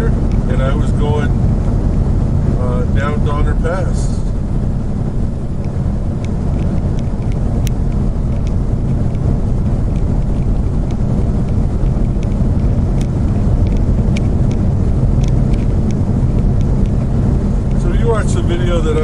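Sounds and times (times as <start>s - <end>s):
road noise inside cab: 0.0s - 19.0s
truck engine drone: 0.0s - 19.0s
faint ticks: 9.9s - 14.6s.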